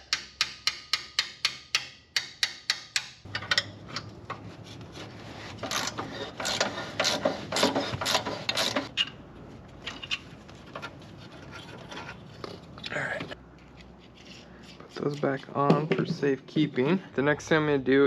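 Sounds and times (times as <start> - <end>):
ratchet wrench clicking and rasping: 5.6 - 9.0.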